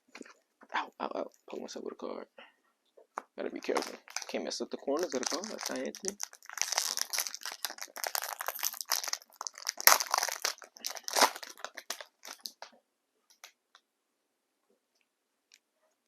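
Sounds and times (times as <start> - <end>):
wrapper crinkling and tearing: 3.6 - 12.7.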